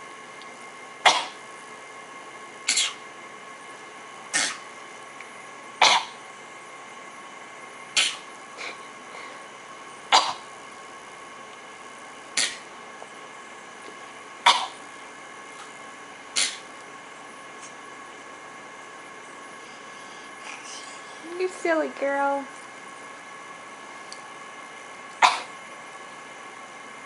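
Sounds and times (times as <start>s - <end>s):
baby fake coughing: 1.0s - 1.4s, 2.7s - 3.0s, 4.3s - 4.6s, 5.8s - 6.2s, 8.0s - 8.2s, 10.1s - 10.5s, 12.4s - 12.6s, 14.4s - 14.8s, 16.4s - 16.6s, 25.2s - 25.5s
breathy fake cough: 25.2s - 25.5s.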